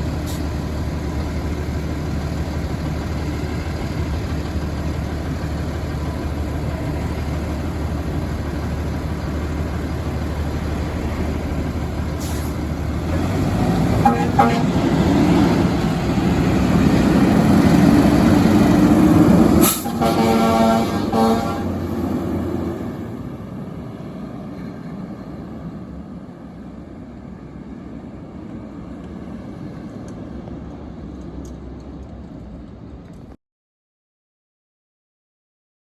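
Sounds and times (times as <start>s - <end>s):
fire engine driving past: 0.0s - 33.4s
fire engine horn honks: 14.0s - 15.0s, 19.6s - 22.0s.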